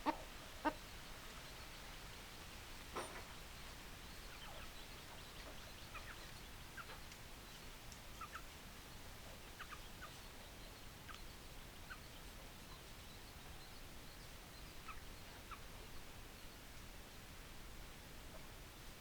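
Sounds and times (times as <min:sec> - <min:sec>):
chickens clucking faintly: 0:00.0 - 0:02.2
steady background hiss: 0:00.0 - 0:19.0.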